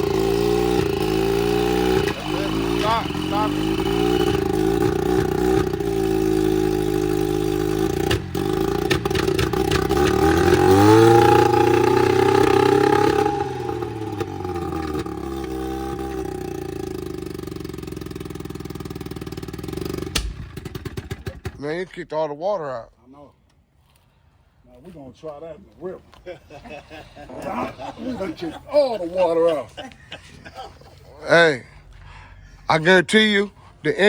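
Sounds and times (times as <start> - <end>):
outboard motor revving and idling: 0.0 - 21.6.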